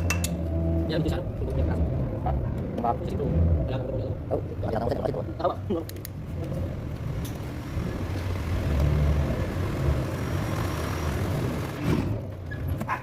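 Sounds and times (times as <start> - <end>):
vehicle engine running: 6.1 - 12.5.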